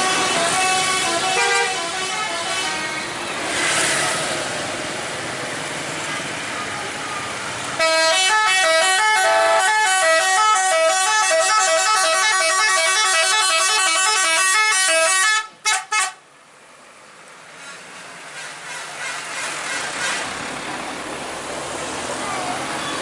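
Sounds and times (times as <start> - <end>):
musical air horn tune: 0.0 - 3.0, 7.8 - 16.2.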